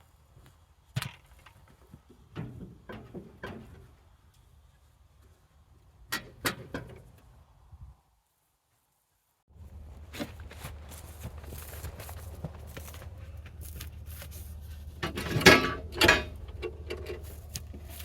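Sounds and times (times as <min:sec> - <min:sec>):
low background rumble: 0:09.5 - 0:18.0.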